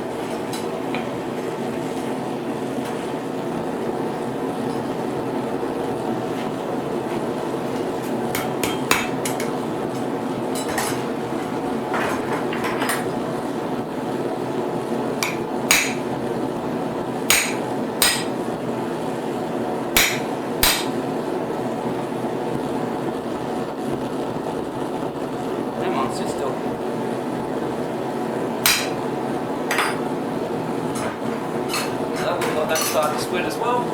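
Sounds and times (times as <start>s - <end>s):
steady hum: 0.0s - 33.9s
hammer striking steel on anvil: 8.4s - 9.5s, 15.2s - 16.1s, 17.3s - 18.4s, 20.0s - 21.0s, 28.6s - 29.0s, 29.7s - 30.1s.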